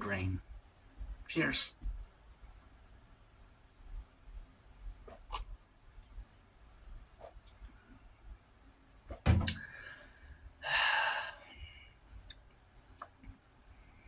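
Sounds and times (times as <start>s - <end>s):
breathy exhale: 9.6s - 12.0s.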